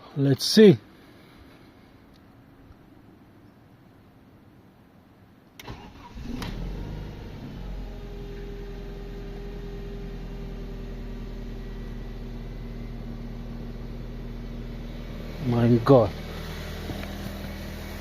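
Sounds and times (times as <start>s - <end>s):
engine cranking and idling: 5.6s - 18.0s.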